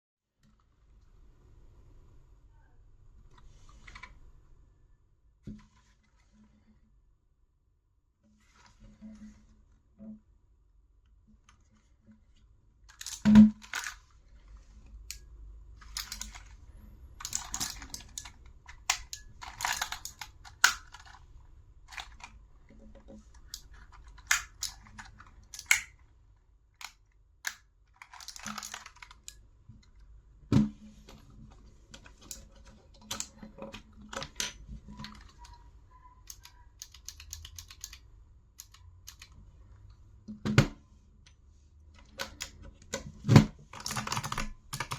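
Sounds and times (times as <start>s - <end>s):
clicky keyboard keys: 36.2s - 38.0s, 38.6s - 39.4s, 43.7s - 44.9s.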